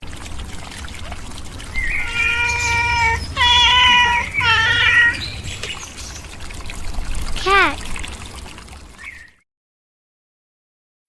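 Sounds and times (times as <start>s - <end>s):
cat meowing: 1.8s - 5.3s.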